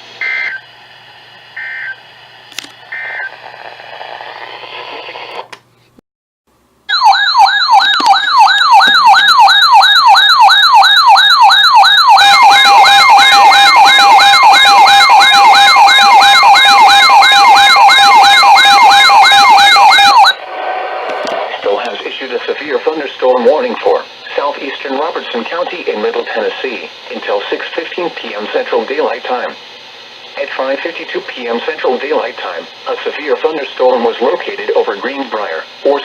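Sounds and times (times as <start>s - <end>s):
electronic warbling alarm: 0.2s - 0.7s, 1.6s - 2.0s, 2.9s - 3.3s, 6.9s - 20.4s.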